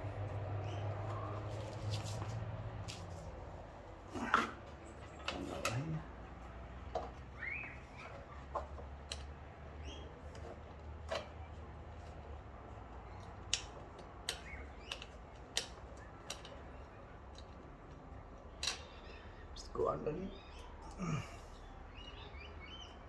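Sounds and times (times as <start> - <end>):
faint bird chirps: 7.4 - 8.4, 18.8 - 23.0.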